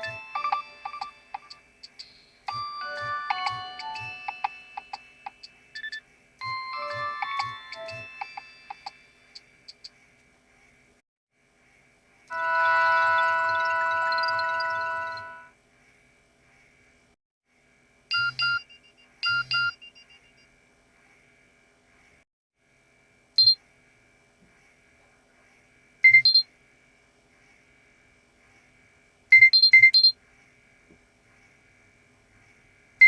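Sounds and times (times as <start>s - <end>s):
phone speaker beep tones: 0.0s - 4.5s.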